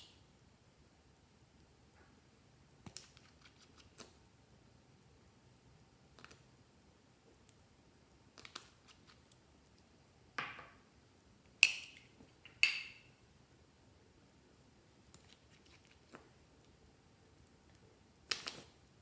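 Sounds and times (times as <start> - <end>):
sharp clicks and snips: 2.8 - 4.2, 8.3 - 9.4, 18.3 - 18.8.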